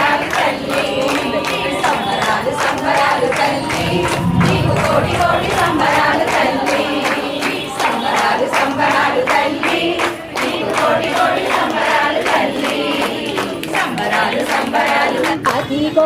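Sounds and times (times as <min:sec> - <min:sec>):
group singing a devotional song: 0:00.0 - 0:16.0.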